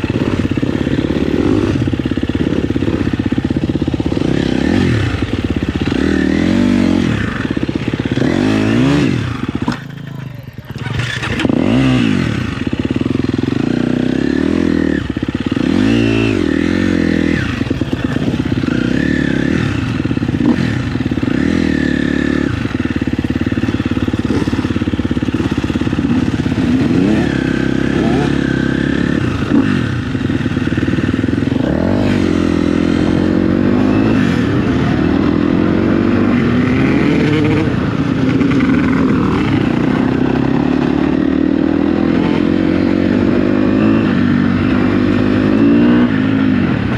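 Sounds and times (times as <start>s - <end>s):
dirt bike engine revving: 0.0s - 46.9s.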